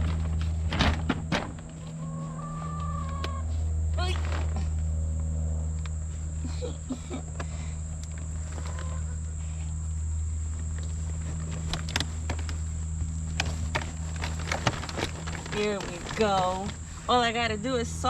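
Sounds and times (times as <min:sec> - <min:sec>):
plastic bucket knocks and rustles: 0:00.0 - 0:01.7
high insect drone: 0:00.0 - 0:18.0
steady low hum: 0:00.0 - 0:18.0.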